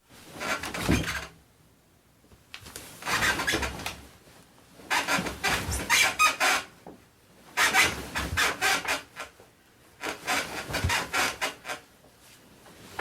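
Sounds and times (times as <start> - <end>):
spring mattress creaking and squeaking: 0.3 - 1.3, 3.0 - 4.0, 4.8 - 6.8, 7.5 - 9.4, 10.0 - 11.9.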